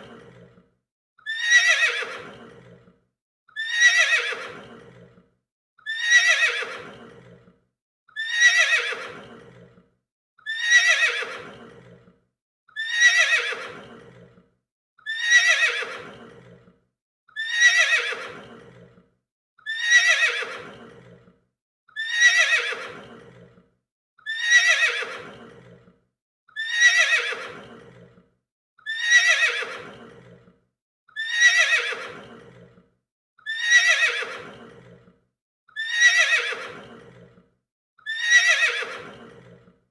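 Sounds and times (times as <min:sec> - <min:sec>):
horse neighing: 0:01.3 - 0:02.9, 0:03.6 - 0:05.1, 0:05.9 - 0:07.5, 0:08.2 - 0:09.7, 0:10.5 - 0:12.0, 0:12.8 - 0:14.2, 0:17.4 - 0:18.9, 0:19.7 - 0:21.2, 0:22.0 - 0:23.5, 0:24.3 - 0:25.8, 0:26.6 - 0:28.1, 0:28.9 - 0:30.4, 0:31.2 - 0:32.6, 0:33.5 - 0:35.0, 0:35.8 - 0:37.2, 0:38.1 - 0:39.6.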